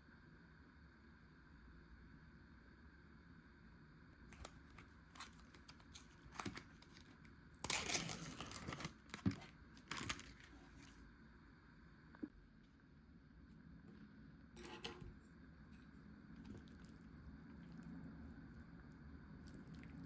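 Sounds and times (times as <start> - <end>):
plastic packaging rustling: 4.4 - 11.0
plastic tearing and crinkling: 4.4 - 11.0.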